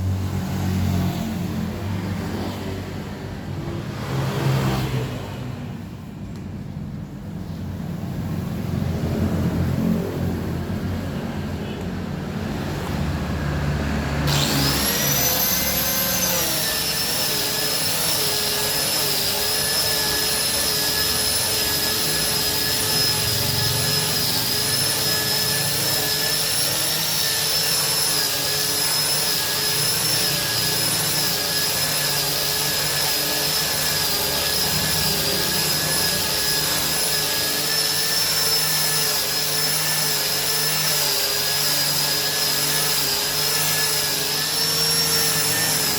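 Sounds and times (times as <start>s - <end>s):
angle grinder sanding wood: 14.3s - 45.9s.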